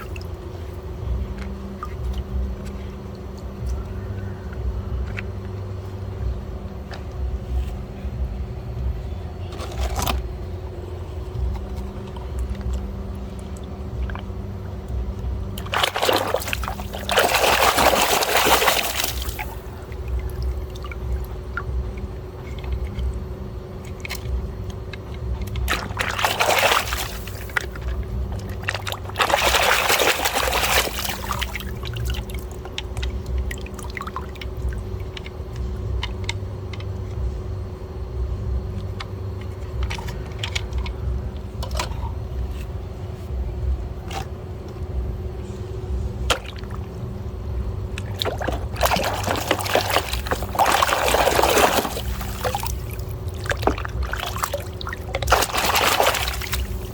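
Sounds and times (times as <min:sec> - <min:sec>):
low hum: 0:00.0 - 0:56.9
water pouring: 0:15.6 - 0:21.8, 0:25.2 - 0:35.3, 0:48.0 - 0:56.9.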